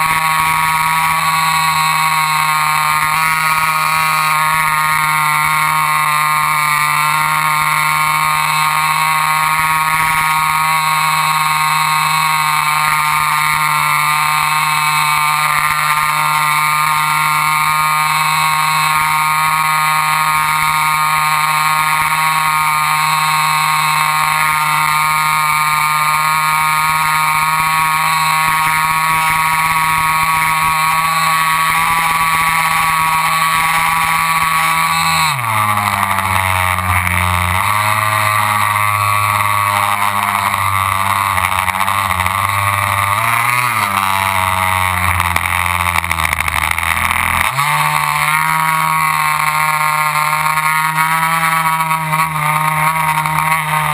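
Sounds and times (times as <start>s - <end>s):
model airplane motor whining: 0.0s - 53.9s.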